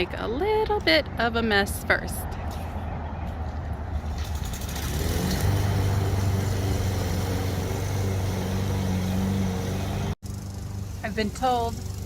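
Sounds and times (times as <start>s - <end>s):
lawnmower engine running: 4.0s - 12.0s.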